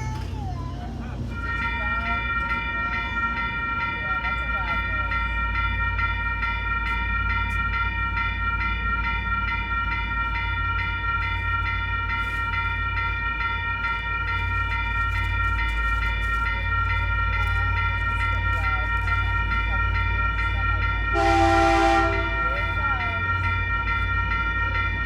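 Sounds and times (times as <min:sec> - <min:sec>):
railroad crossing bells ringing: 0:00.0 - 0:25.0.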